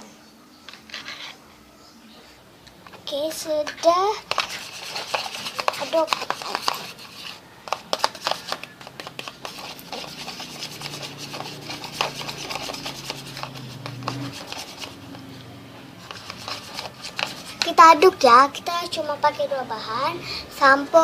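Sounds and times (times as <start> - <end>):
stirrer scraping a container: 0.7 - 1.4, 2.9 - 15.3, 15.9 - 19.3.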